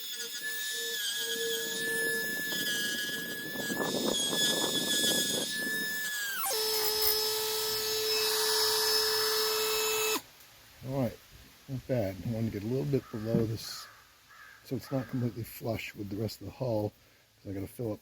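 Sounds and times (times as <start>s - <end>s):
rotary tool whining: 0.0s - 10.2s.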